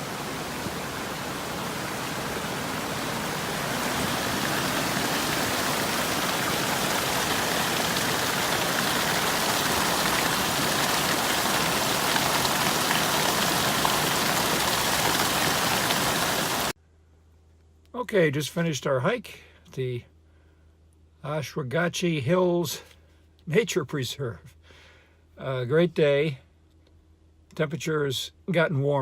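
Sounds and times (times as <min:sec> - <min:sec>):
stream water rushing: 0:00.0 - 0:16.8.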